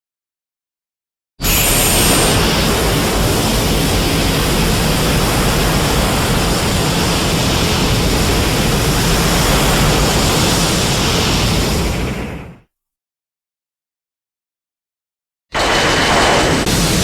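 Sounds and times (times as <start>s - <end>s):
dense rushing beam noise: 1.4s - 12.6s, 15.6s - 17.0s.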